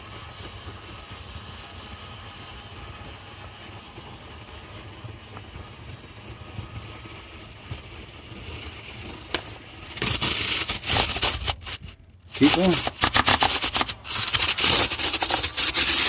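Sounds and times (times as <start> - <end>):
rotary brush rumbling in duct: 0.0 - 16.0
harsh rushing noise: 9.2 - 16.0.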